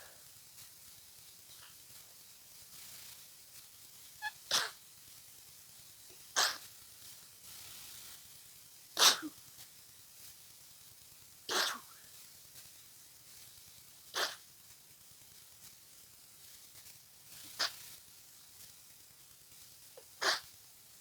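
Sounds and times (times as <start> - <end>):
person sneezing: 4.5 - 4.8, 6.4 - 6.6, 9.0 - 9.4, 11.5 - 11.9, 14.2 - 14.4, 20.2 - 20.4.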